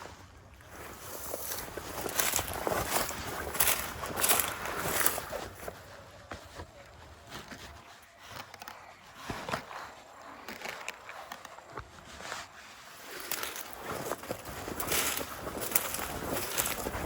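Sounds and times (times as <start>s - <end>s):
footsteps through dry brush: 0.0s - 17.0s
twigs snapping and crackling: 1.4s - 5.4s, 13.1s - 17.0s.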